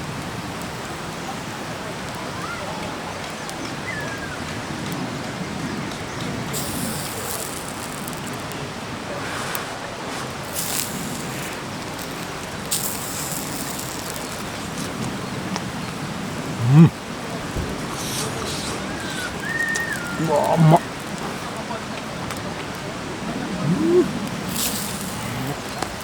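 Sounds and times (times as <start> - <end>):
river babbling: 6.4 - 26.0
short hissing bursts: 6.5 - 8.5, 9.1 - 15.3, 16.4 - 21.1, 23.5 - 26.0.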